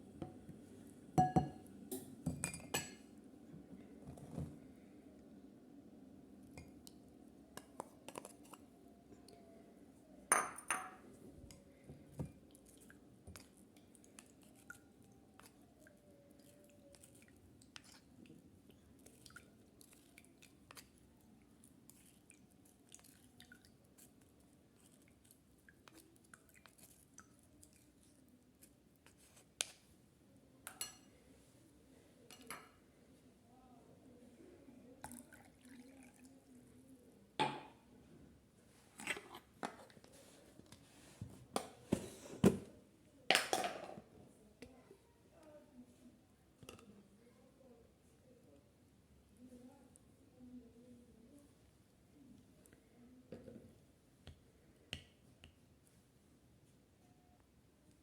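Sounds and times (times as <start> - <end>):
glassware and utensils clinking: 1.2 - 3.0, 10.3 - 11.0.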